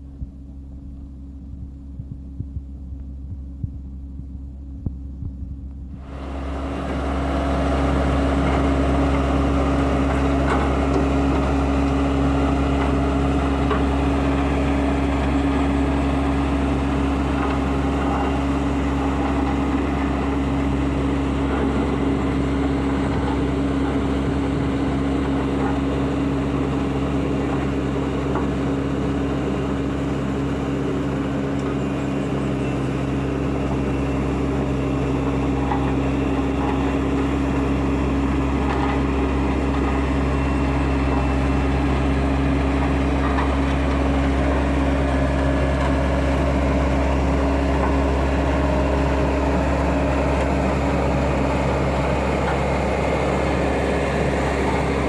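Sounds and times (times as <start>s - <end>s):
diesel engine humming: 0.0s - 55.0s.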